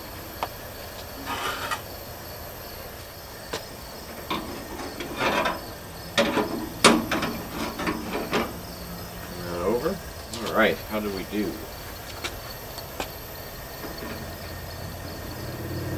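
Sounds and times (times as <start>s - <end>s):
scraping rustles: 1.1s - 1.9s, 4.0s - 8.6s.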